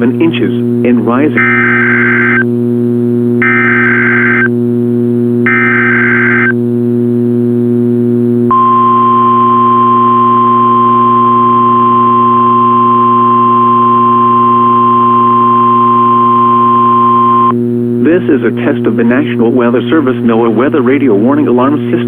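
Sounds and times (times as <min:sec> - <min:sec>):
constant low hum: 0:00.0 - 0:22.0
steady alarm tone: 0:01.3 - 0:02.5, 0:03.4 - 0:04.5, 0:05.4 - 0:06.5, 0:08.5 - 0:17.7.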